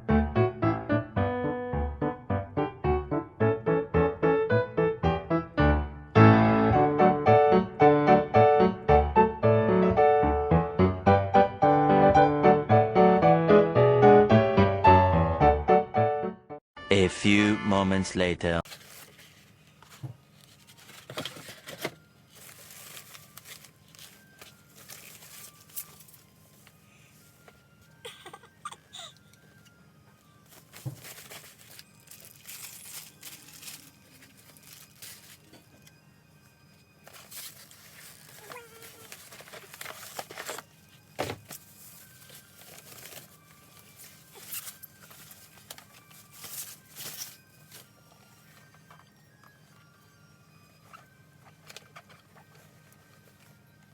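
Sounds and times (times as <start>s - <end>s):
packaging rustling and tearing: 18.7s - 28.1s, 28.9s - 36.0s, 36.9s - 49.3s
faint background music: 29.8s - 53.9s.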